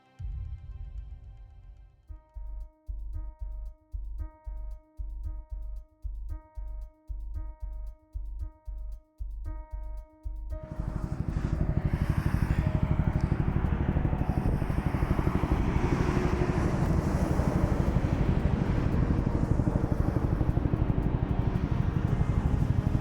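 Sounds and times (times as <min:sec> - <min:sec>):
helicopter rotor chopping: 0:10.6 - 0:23.0
turbine rushing noise: 0:10.6 - 0:23.0.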